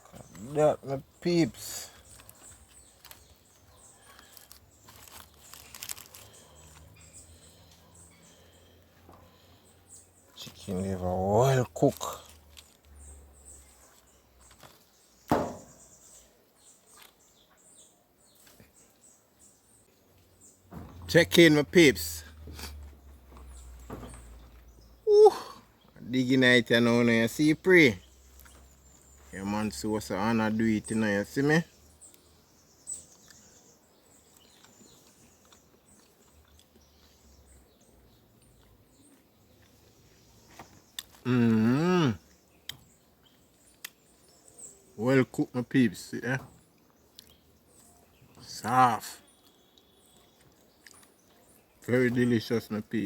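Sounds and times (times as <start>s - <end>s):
faint bird chirps: 22.2s - 26.1s, 27.9s - 53.0s.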